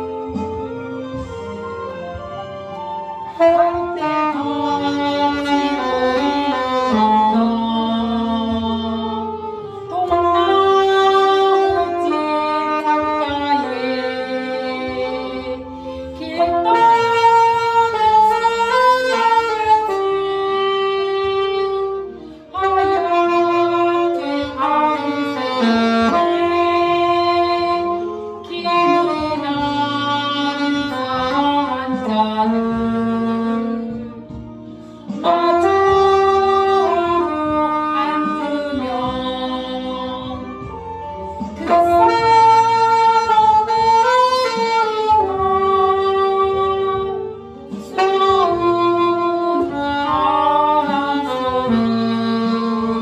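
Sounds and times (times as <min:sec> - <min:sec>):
backing accompaniment: 0:00.0 - 0:53.0
saxophone melody: 0:00.0 - 0:53.0.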